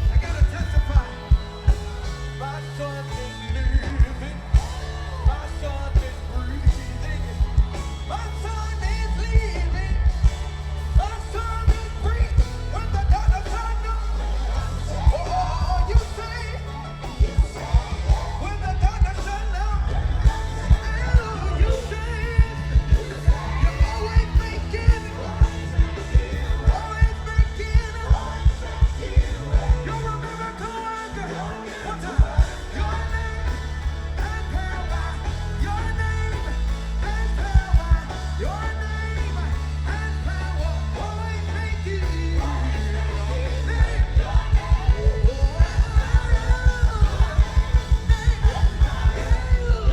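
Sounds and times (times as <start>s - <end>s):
gospel band playing: 0.0s - 49.9s
people singing: 0.0s - 49.9s.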